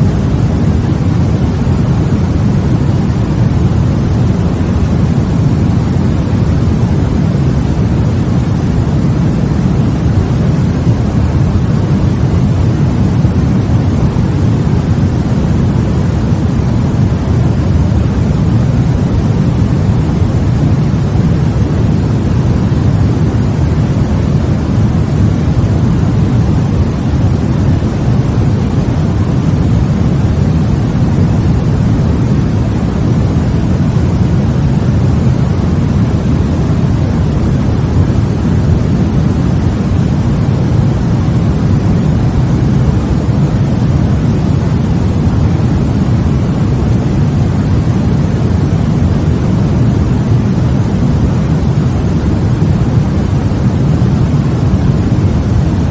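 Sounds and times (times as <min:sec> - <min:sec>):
deep white noise hiss: 0:00.0 - 0:55.9.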